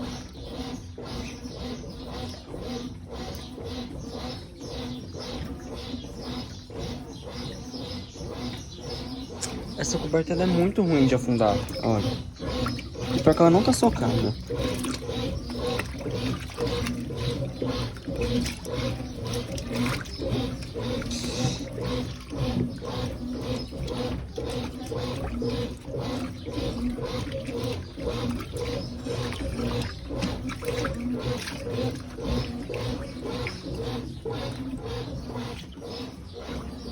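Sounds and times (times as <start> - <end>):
washing machine motor hum: 0.0 - 36.9
water sloshing in tub: 0.0 - 36.9.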